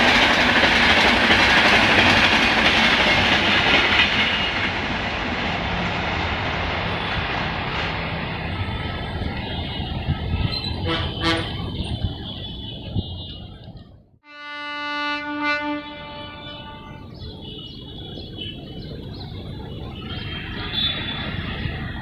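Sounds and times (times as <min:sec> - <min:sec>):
train running noise: 0:00.0 - 0:22.0
locomotive air horn: 0:10.8 - 0:13.5, 0:14.2 - 0:17.1.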